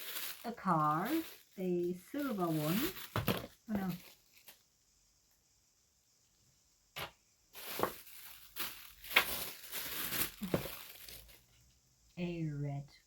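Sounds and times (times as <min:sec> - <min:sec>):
plastic packaging crinkling: 0:00.0 - 0:04.6, 0:07.6 - 0:11.6.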